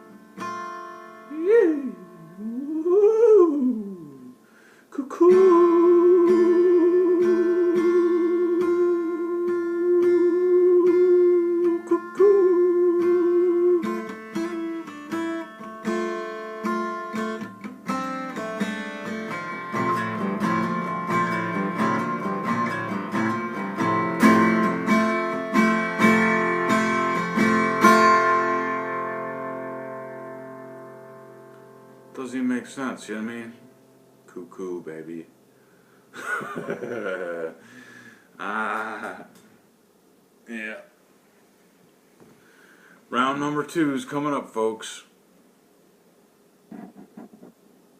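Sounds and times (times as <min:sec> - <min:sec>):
acoustic guitar picked and strummed: 0:00.0 - 0:35.7.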